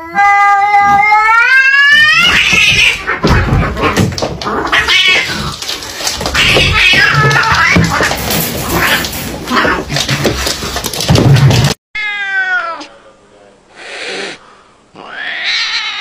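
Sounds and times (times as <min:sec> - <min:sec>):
cats yowling and screeching: 0:00.0 - 0:10.1, 0:12.0 - 0:12.9, 0:15.0 - 0:16.0.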